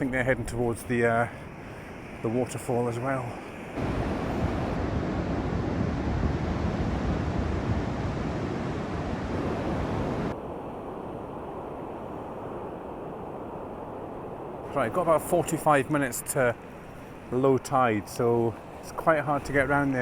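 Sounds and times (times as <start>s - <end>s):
surf breaking on shore: 2.0s - 10.4s
wind on microphone: 3.7s - 14.7s.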